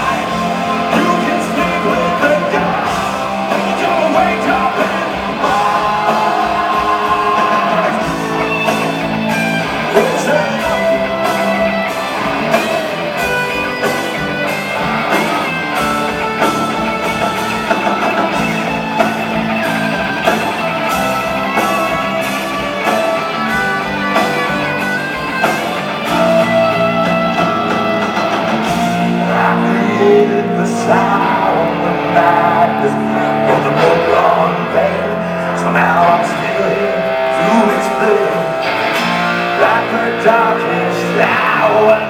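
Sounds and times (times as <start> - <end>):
rock band playing live: 0.0 - 42.0.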